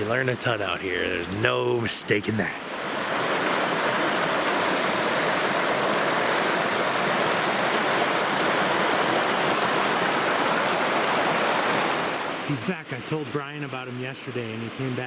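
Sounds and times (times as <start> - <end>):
babbling creek: 0.0 - 15.0.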